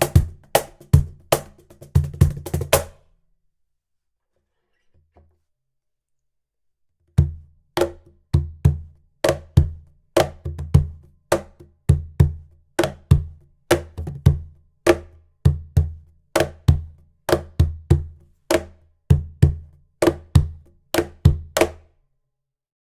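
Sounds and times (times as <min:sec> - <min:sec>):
cajon played by hand: 0:00.0 - 0:03.0, 0:07.2 - 0:21.8.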